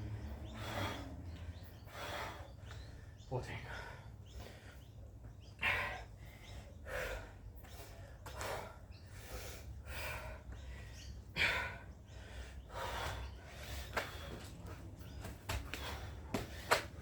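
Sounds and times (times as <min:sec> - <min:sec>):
person breathing hard: 0:00.2 - 0:03.0, 0:05.6 - 0:14.5.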